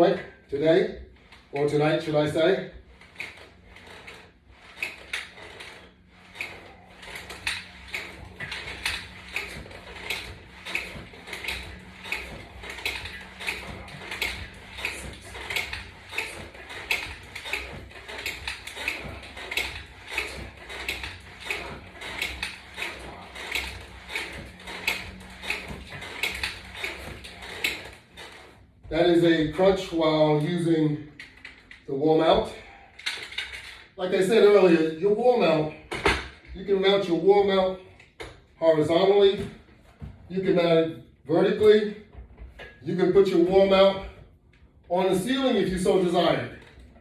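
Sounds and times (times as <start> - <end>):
resistance band gear clicking: 1.2 - 34.4.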